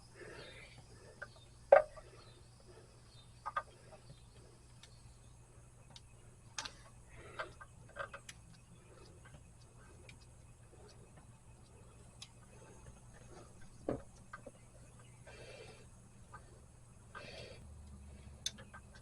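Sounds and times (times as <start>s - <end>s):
small metal clicks and taps: 18.4s - 19.0s.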